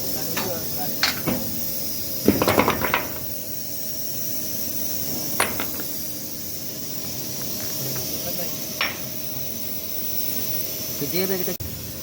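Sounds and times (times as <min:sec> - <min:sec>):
steady hiss: 0:00.0 - 0:12.0
hand tools clinking and knocking: 0:00.4 - 0:01.6, 0:02.3 - 0:03.3, 0:05.3 - 0:06.0.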